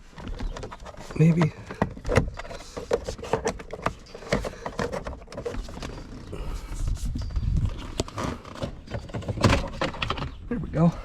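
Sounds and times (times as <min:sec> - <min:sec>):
hard plastic clicking and knocking: 0:00.1 - 0:06.1.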